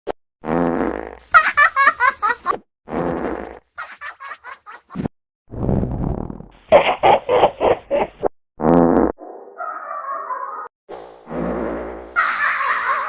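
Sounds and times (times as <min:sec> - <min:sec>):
cartoon fart sound effect: 0:00.4 - 0:01.2, 0:02.9 - 0:03.8, 0:05.0 - 0:06.6, 0:08.6 - 0:09.2.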